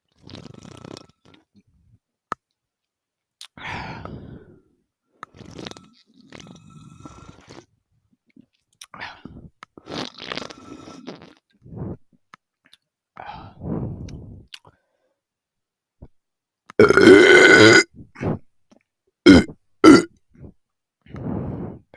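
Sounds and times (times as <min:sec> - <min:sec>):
breathing: 0:03.6 - 0:04.8, 0:13.2 - 0:15.3, 0:20.4 - 0:21.9
person gulping and swallowing: 0:16.8 - 0:17.8, 0:19.3 - 0:20.1.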